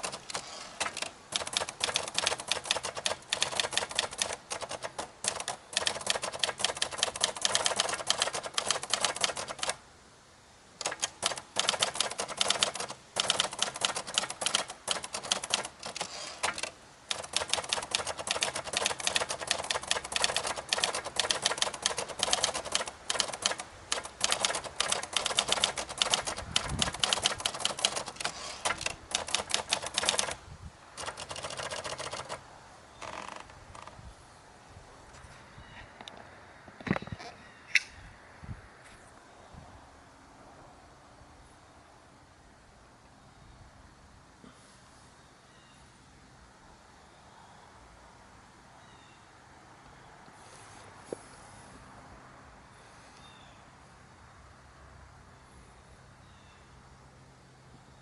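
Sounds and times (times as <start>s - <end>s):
manual typewriter keystrokes: 0.0s - 9.8s, 10.8s - 30.4s, 31.0s - 32.4s.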